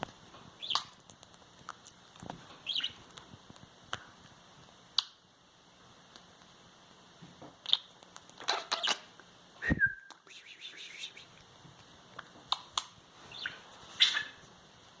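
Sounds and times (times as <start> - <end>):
budgerigar chirping and chattering: 0.6 - 0.9, 2.6 - 3.0, 7.7 - 9.0, 13.3 - 14.4.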